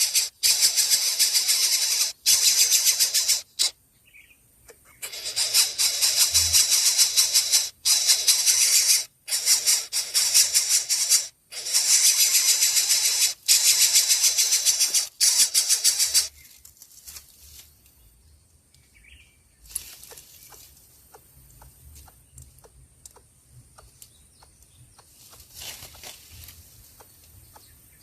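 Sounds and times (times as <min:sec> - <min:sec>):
young bird begging calls: 0:00.0 - 0:03.8, 0:04.7 - 0:16.3
faint clicks: 0:19.7 - 0:25.4.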